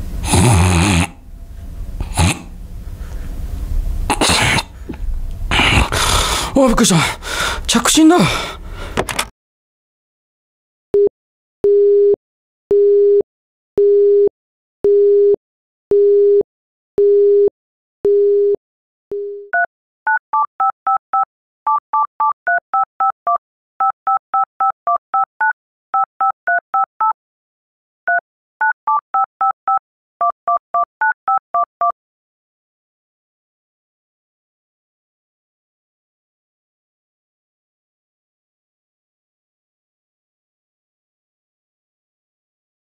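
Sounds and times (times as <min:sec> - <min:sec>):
pulsing telephone busy tone: 0:17.0 - 0:17.5, 0:18.1 - 0:21.0
keypad dialing beeps: 0:19.6 - 0:27.2, 0:28.1 - 0:32.0.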